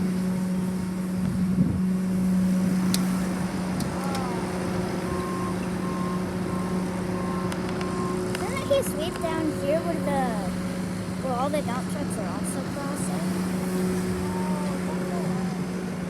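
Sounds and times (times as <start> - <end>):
heavy vehicle engines humming: 0.0 - 16.0
reversing alarm beeping: 2.0 - 11.0.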